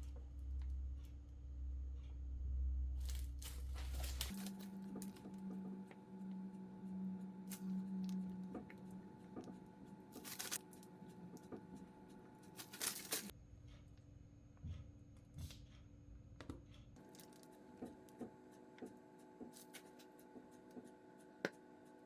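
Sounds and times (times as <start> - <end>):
faint low hum: 0.0 - 18.8
scraping or rustling: 3.0 - 4.8, 10.1 - 10.8, 12.4 - 13.3.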